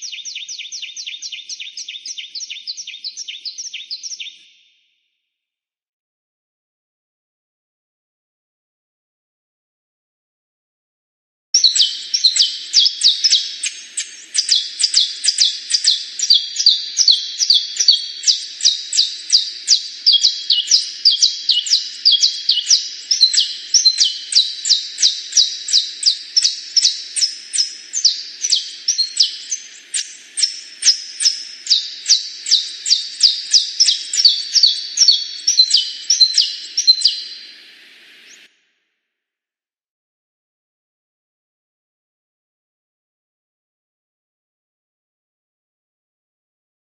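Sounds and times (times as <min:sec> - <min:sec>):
canary singing trills: 0:00.0 - 0:04.7, 0:11.6 - 0:38.5.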